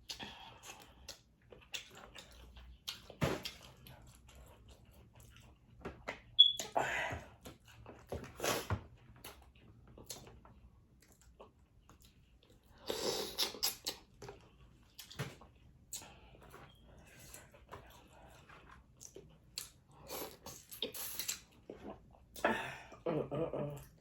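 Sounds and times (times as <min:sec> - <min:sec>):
chewing and biting: 0:00.0 - 0:05.8.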